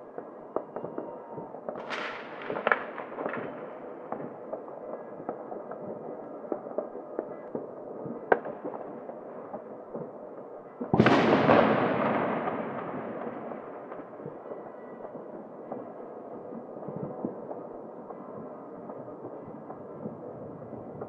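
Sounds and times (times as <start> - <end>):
distant firework pops: 0.1 - 21.0
firecracker sharp crack: 1.7 - 4.7, 10.9 - 14.2
loud heavy firework bang: 10.9 - 13.6.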